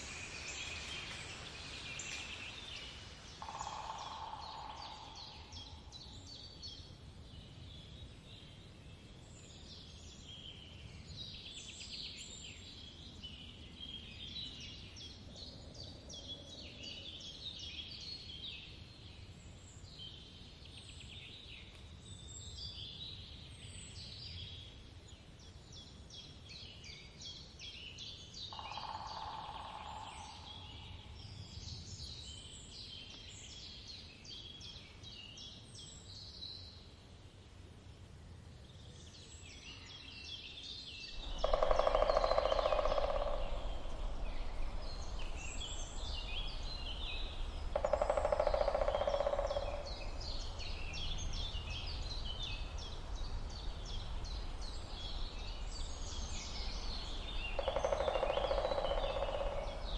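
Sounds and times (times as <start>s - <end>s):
birds chirping and trilling: 0.0s - 6.3s, 39.6s - 59.9s
low steady bird call: 0.0s - 37.1s, 38.6s - 59.9s
low background hiss: 0.0s - 59.9s.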